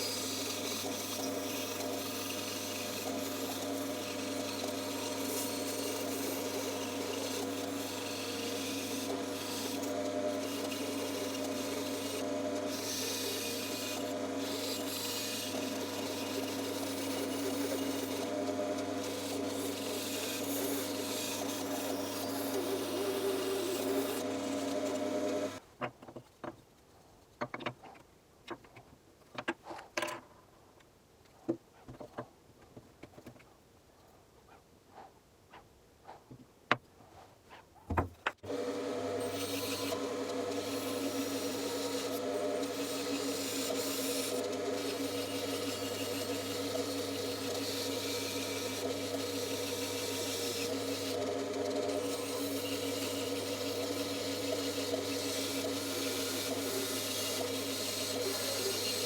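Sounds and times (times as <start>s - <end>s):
bandsaw cutting wood: 0.0s - 25.6s, 38.4s - 59.0s.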